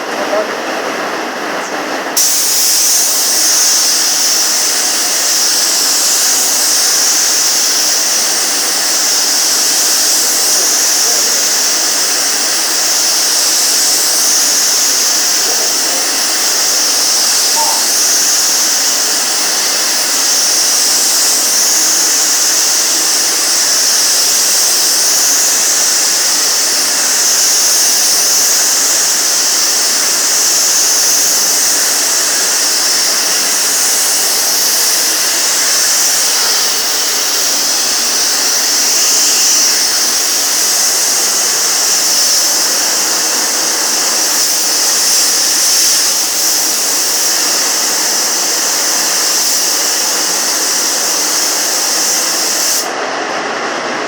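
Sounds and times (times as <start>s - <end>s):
paint spray gun hissing: 2.1s - 53.0s.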